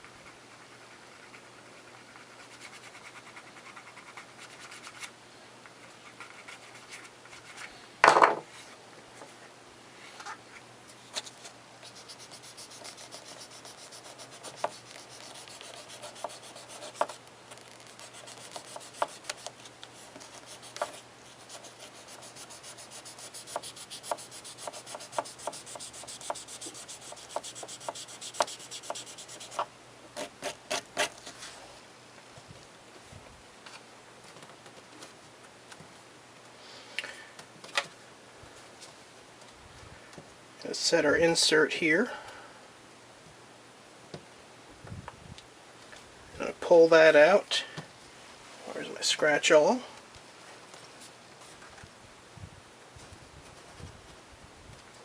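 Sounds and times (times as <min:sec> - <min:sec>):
leather edge rubbing: 0:21.6 - 0:29.6.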